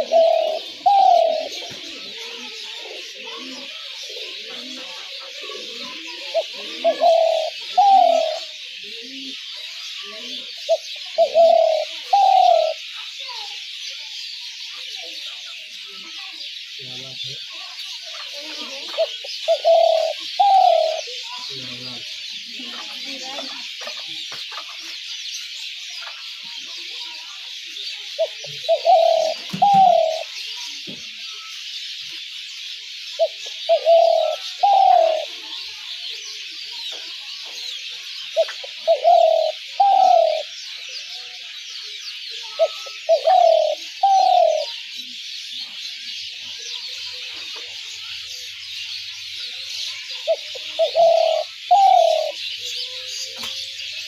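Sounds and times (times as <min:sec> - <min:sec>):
dove cooing: 0:00.0 - 0:12.9, 0:18.3 - 0:21.5, 0:28.1 - 0:30.3, 0:33.2 - 0:35.4, 0:38.4 - 0:40.6, 0:42.5 - 0:44.8, 0:50.2 - 0:52.4.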